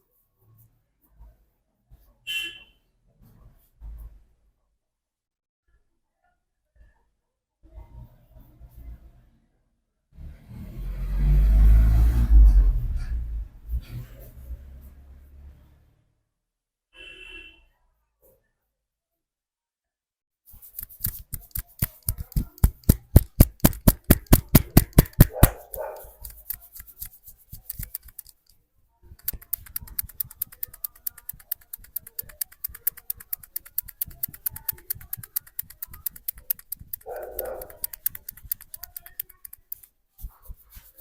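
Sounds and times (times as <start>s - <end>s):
hands striking in head massage: 20.6s - 28.3s.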